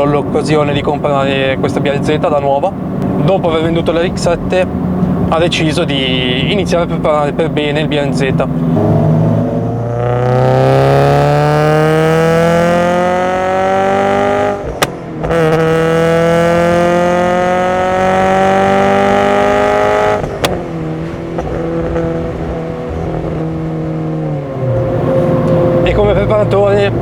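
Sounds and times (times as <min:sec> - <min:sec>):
car engine accelerating: 0:00.0 - 0:27.0
sharp snap at upshift: 0:14.6 - 0:15.7, 0:20.2 - 0:20.7.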